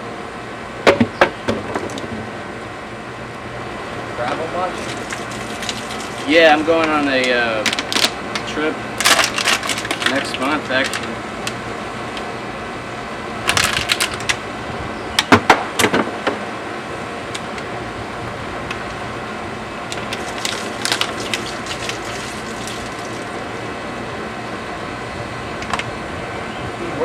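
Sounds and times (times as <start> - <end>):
steady background hum: 0.0 - 27.0
plastic bottles rattling and crinkling: 4.7 - 11.5, 13.5 - 14.4, 19.9 - 23.4.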